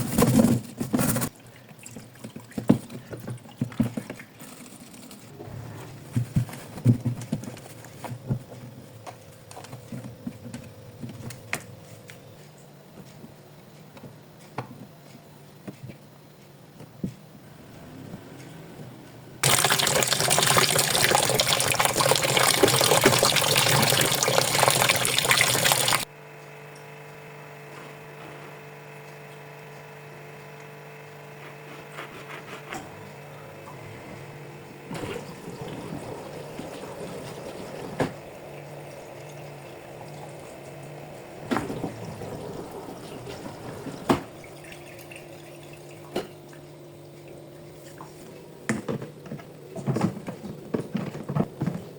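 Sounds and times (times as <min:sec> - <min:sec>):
water gushing in washing machine: 0:00.0 - 0:04.4, 0:19.4 - 0:26.1, 0:33.1 - 0:48.4
washing machine hum: 0:00.0 - 0:14.9, 0:17.3 - 0:26.1, 0:27.4 - 0:51.9.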